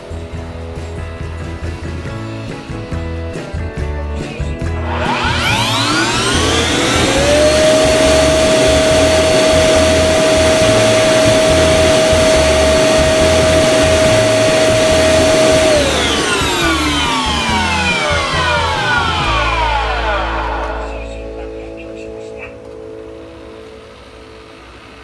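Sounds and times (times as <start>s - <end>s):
suction motor whine: 4.8s - 21.3s.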